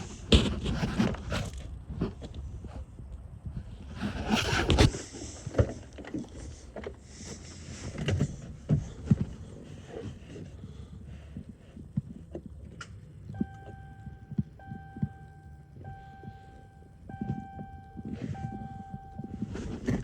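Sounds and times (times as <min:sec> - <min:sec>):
electronic warning chime: 0:13.4 - 0:20.0.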